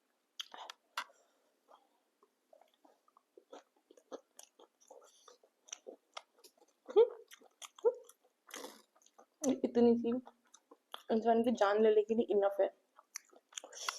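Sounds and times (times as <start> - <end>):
wet crunchy chewing: 2.6 - 9.6, 10.2 - 11.1, 12.9 - 13.9.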